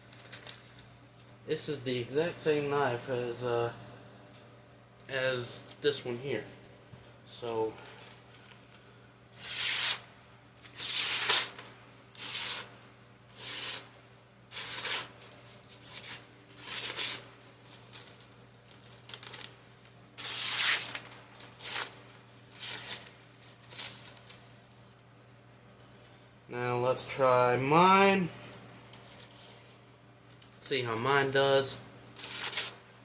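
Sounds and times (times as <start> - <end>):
knife slicing through paper: 9.4 - 10.0, 10.7 - 11.6, 12.2 - 12.7, 13.3 - 13.9, 14.5 - 17.3, 20.2 - 24.2, 32.2 - 32.8.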